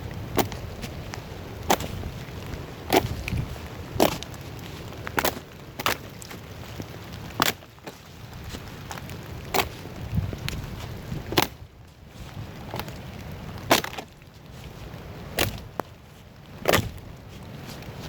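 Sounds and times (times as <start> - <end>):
wood being struck: 16.6 - 17.0.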